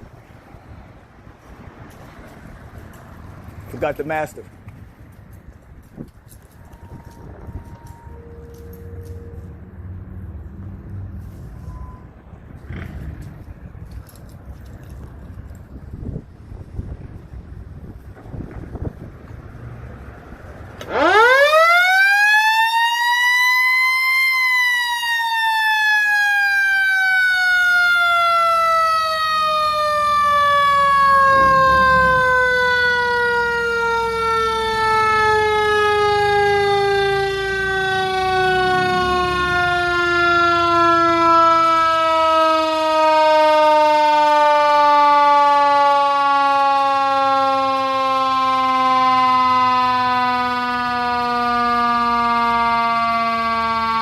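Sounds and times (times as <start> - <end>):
mechanical siren wailing: 6.6 - 9.9, 20.8 - 54.0.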